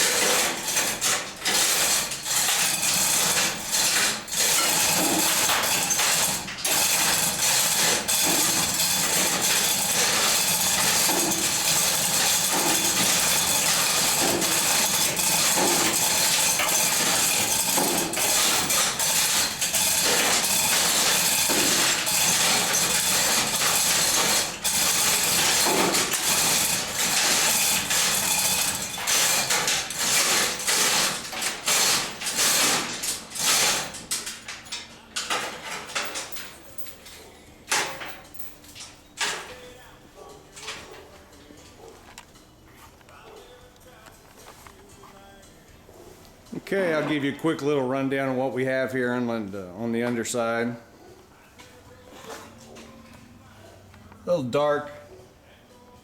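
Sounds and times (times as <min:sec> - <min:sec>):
loud mechanical rattling: 0:00.0 - 0:36.6.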